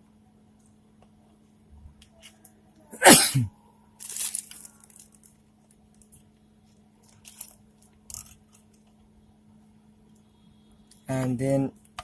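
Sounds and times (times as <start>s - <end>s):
faint steady hum: 0.0s - 12.0s
crinkling rustles: 4.0s - 9.0s.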